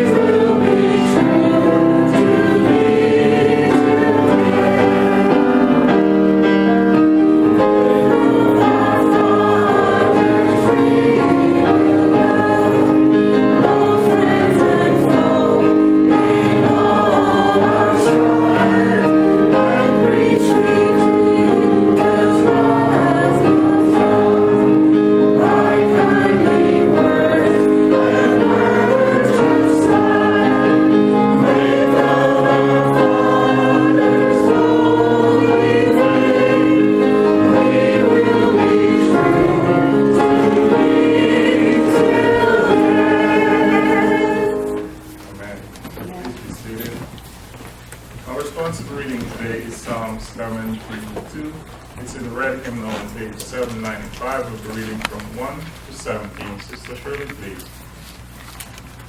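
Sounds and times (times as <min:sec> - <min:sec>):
congregation singing a hymn: 0:00.0 - 0:45.4, 0:48.3 - 0:57.6
instrumental accompaniment: 0:00.0 - 0:46.3.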